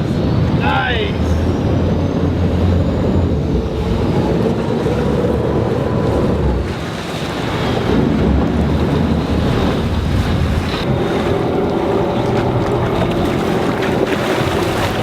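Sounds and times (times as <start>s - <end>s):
low rumble: 0.0s - 15.0s
water noise: 0.0s - 15.0s
wind buffeting microphone: 0.0s - 15.0s.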